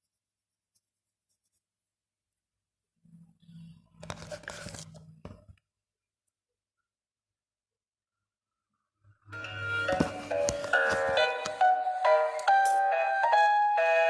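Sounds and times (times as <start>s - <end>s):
paper rustling: 4.0s - 5.4s, 9.9s - 11.6s.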